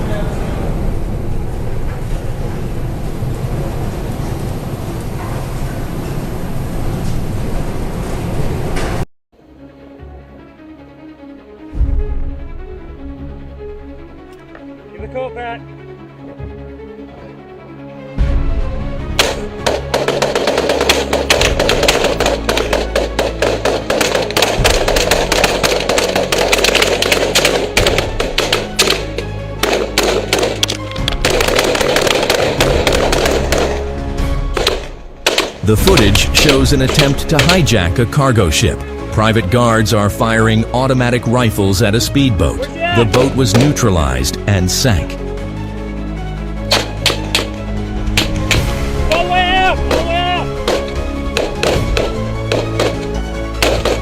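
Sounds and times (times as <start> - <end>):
ship low rumbling: 0.0 - 9.0
fast percussive beat: 19.2 - 33.8, 34.6 - 37.8, 43.0 - 44.0, 48.2 - 54.0
low bass notes: 20.9 - 54.0.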